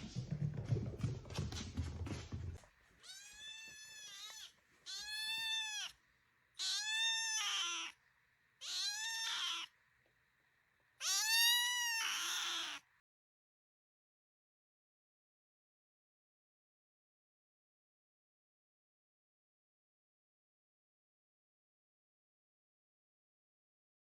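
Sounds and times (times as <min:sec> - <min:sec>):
rustling and knocking: 0:00.0 - 0:02.8
cat meowing: 0:03.0 - 0:06.0, 0:06.6 - 0:08.0, 0:08.6 - 0:09.8, 0:11.0 - 0:12.9.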